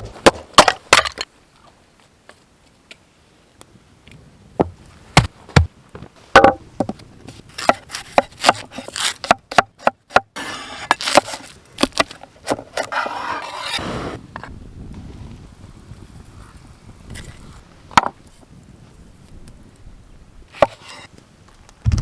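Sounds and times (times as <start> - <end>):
firewood chopping cracks: 7.5 - 12.6.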